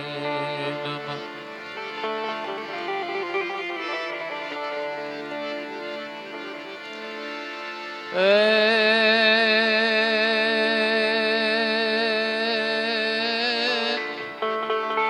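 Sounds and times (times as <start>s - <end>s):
instrumental accompaniment: 0.0s - 15.0s
person singing devotional song: 8.1s - 14.5s.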